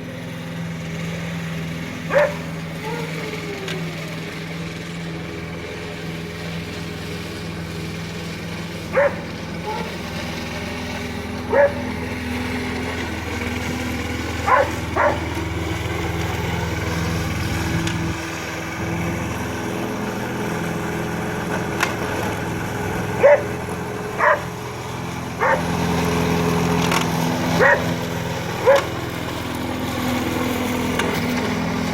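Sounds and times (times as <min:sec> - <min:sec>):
lawn mower engine running: 0:00.0 - 0:31.9
dog barking: 0:02.1 - 0:03.3, 0:08.9 - 0:09.9, 0:11.5 - 0:11.8, 0:14.5 - 0:15.3, 0:23.2 - 0:23.5, 0:24.2 - 0:24.5, 0:25.4 - 0:25.6, 0:27.6 - 0:27.9, 0:28.6 - 0:28.9.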